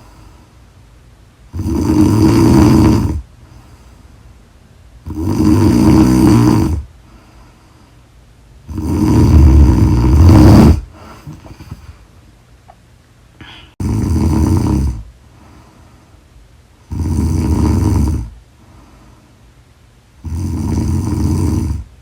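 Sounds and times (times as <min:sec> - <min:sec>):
woman snoring: 0:01.5 - 0:03.3, 0:05.0 - 0:06.9, 0:08.7 - 0:11.8, 0:13.4 - 0:15.1, 0:16.9 - 0:18.4, 0:20.2 - 0:21.9.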